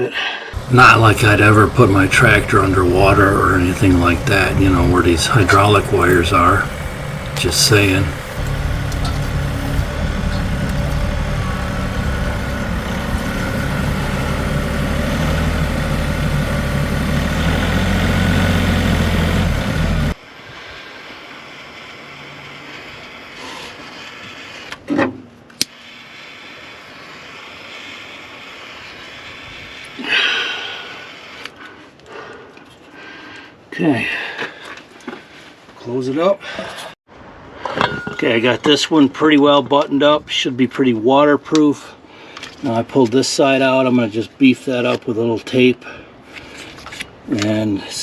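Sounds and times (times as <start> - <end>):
tractor diesel engine idling: 0.6 - 20.2.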